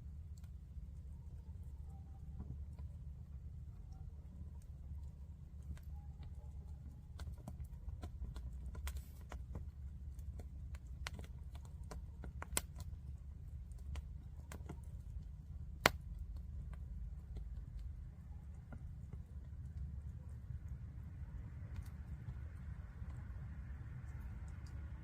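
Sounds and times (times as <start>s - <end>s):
low fire rumble: 0.0s - 25.0s
wood fire crackling and popping: 6.9s - 25.0s.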